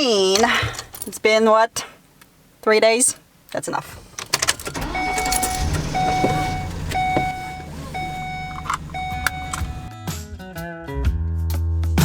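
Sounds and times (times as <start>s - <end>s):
van engine starting and running: 3.8s - 9.9s
dashboard warning chime: 4.6s - 9.9s.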